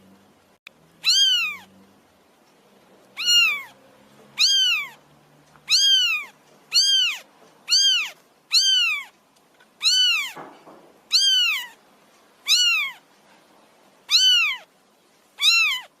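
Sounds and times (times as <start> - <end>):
kitten meowing: 1.0 - 1.7, 3.2 - 3.8, 4.4 - 5.0, 5.6 - 9.2, 9.8 - 10.4, 11.1 - 11.8, 12.4 - 13.0, 14.1 - 14.7, 15.4 - 16.0.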